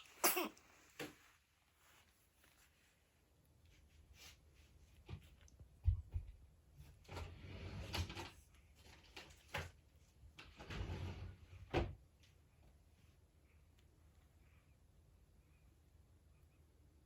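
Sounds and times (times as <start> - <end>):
person sneezing: 0.0 - 0.6.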